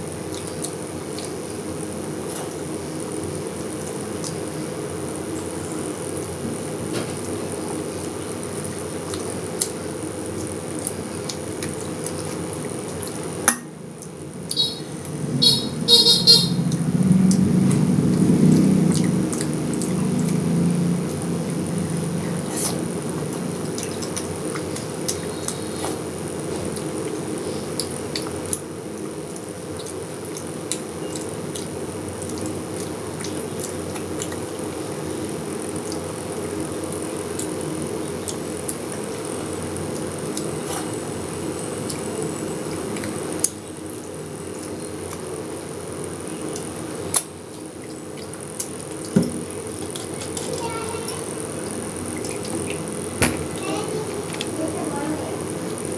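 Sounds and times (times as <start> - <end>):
low background hum: 0.0 - 55.9
small wet clicks: 23.2 - 25.8, 26.6 - 34.5, 46.5 - 51.3.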